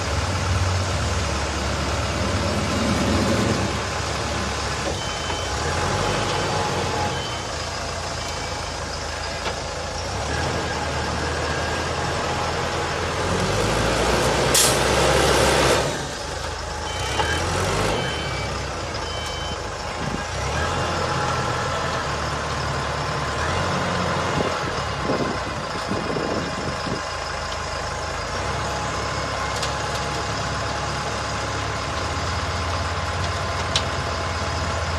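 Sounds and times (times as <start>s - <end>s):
truck engine running: 0.0s - 34.9s
reversing beeps: 4.8s - 9.6s, 10.3s - 12.2s, 16.6s - 23.9s.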